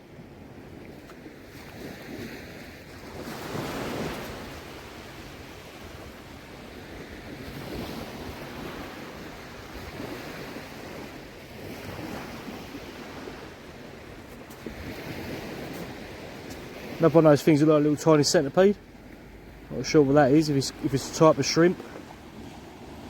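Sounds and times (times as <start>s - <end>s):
small waves washing: 0.0s - 23.0s
wind on microphone: 0.4s - 17.1s.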